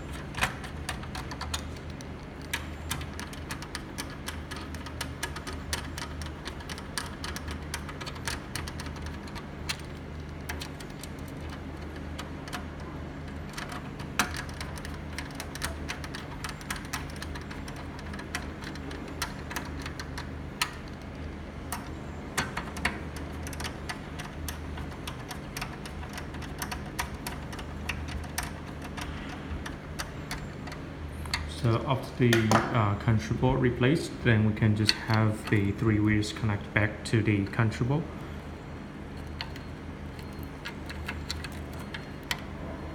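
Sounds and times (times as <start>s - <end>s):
small clicks on metal chassis: 0.0s - 31.7s
steady low hum: 0.0s - 42.9s.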